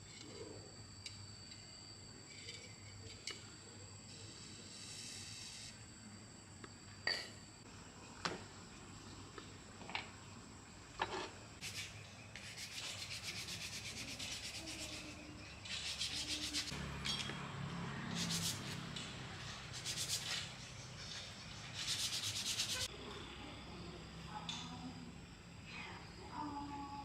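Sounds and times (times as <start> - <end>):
hand rubbing abrasive on part: 11.6 - 16.7, 18.1 - 20.7, 21.7 - 22.9.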